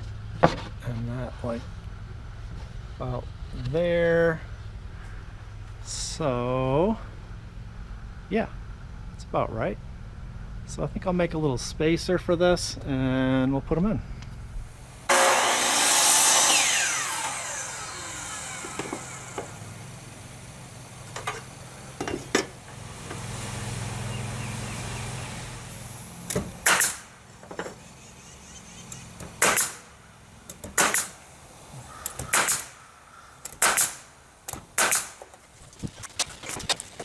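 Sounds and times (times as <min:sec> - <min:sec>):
low motor hum: 0:14.0 - 0:30.7
power saw whine: 0:14.4 - 0:31.2
nail gun bangs: 0:15.1 - 0:19.7, 0:26.2 - 0:27.7, 0:29.2 - 0:29.9, 0:30.5 - 0:31.2, 0:32.0 - 0:32.8, 0:33.4 - 0:35.4.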